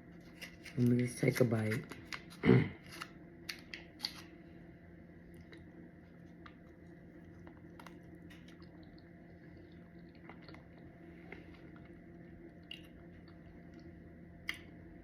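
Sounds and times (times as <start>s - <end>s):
low steady hum: 0.0s - 15.0s
faint chewing: 5.2s - 14.7s.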